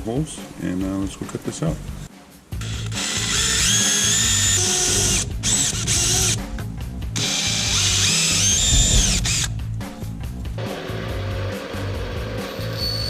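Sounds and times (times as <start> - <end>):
power tool whining cutting plate: 7.2 - 9.5.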